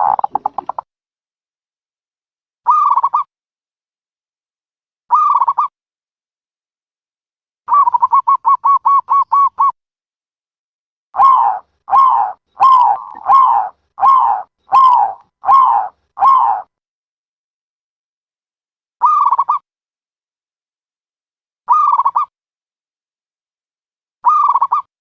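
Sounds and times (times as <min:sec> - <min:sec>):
dove calls: 0:00.0 - 0:00.8, 0:11.2 - 0:16.7.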